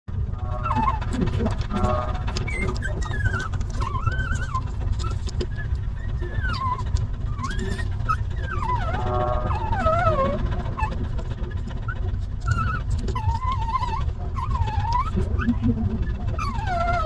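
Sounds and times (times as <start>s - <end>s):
steady low rumble: 0.1s - 17.0s
puppies whining and squealing: 0.5s - 17.0s
handling rustles and clicks: 1.0s - 8.5s.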